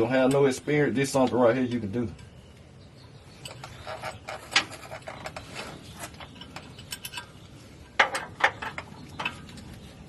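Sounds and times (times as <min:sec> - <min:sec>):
metal knocks: 0:08.0 - 0:09.4.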